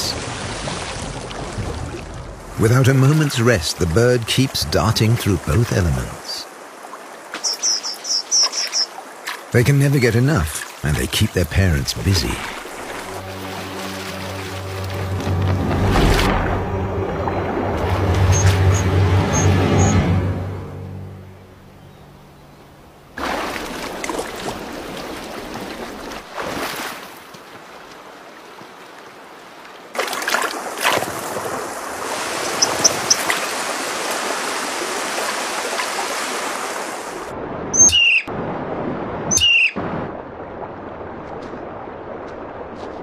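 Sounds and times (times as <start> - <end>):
rushing stream water: 0.0 - 20.9, 22.9 - 43.0
high bird calls: 7.4 - 9.0, 32.3 - 33.4, 37.8 - 38.3, 39.3 - 39.8.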